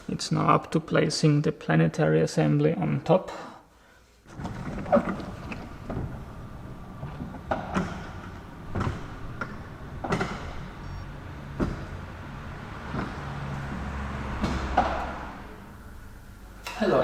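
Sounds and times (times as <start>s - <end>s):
metal parts knocking and clunking: 4.3s - 12.2s
low sliding rumble: 4.3s - 16.6s.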